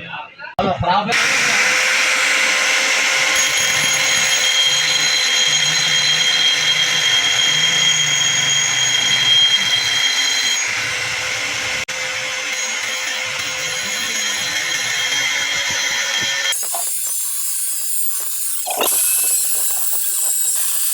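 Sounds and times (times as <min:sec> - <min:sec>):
power grinder grinding steel: 0:01.1 - 0:20.9
high whine: 0:03.3 - 0:11.9.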